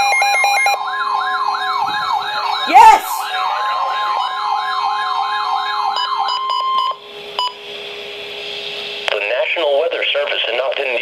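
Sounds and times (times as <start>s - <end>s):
siren-like sweeping alarm tone: 0.0s - 6.8s.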